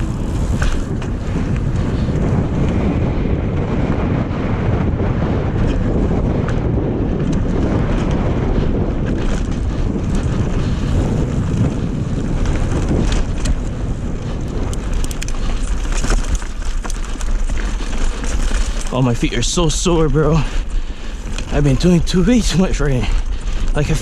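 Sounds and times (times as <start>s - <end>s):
wind buffeting microphone: 0.0s - 24.0s
sharp clicks and rattles: 9.0s - 24.0s.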